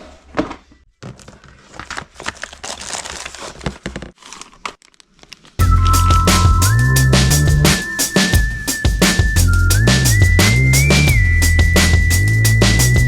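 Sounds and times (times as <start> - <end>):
crinkling and crackling: 0.0 - 5.6.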